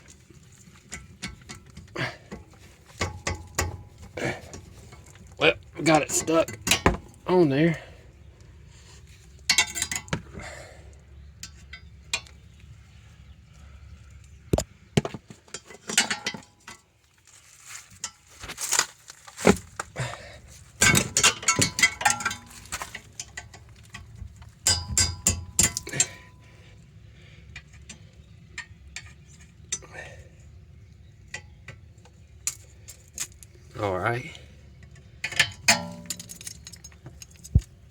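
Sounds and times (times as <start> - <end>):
metal tools clinking: 0.7 - 7.4, 9.4 - 10.3, 15.5 - 16.8, 20.8 - 26.6, 34.8 - 37.7.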